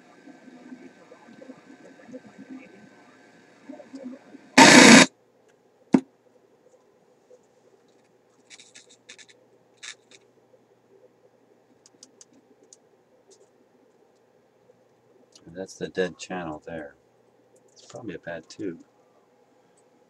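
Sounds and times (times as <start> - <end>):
faint hum: 0.0 - 20.0
scratchy rustles: 8.3 - 10.2.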